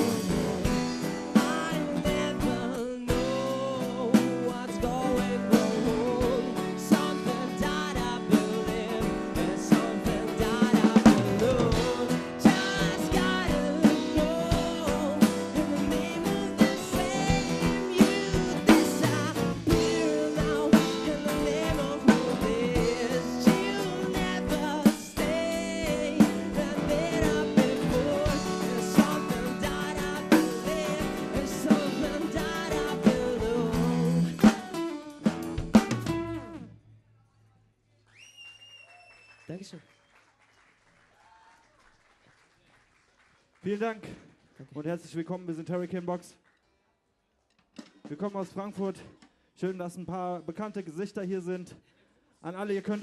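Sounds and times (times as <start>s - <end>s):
person singing: 0.0s - 34.8s
live rock band playing: 0.0s - 36.8s.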